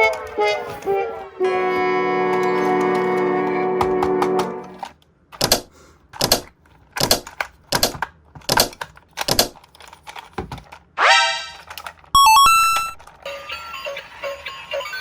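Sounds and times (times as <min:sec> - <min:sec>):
sharp clicks: 0:05.4 - 0:09.7.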